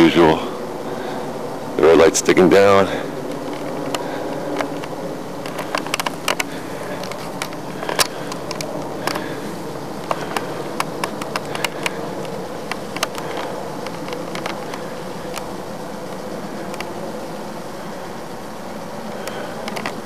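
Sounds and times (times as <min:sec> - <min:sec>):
droning hum: 0:00.0 - 0:20.0
sharp clicks and ticks: 0:03.3 - 0:09.4, 0:10.0 - 0:17.0, 0:19.1 - 0:20.0.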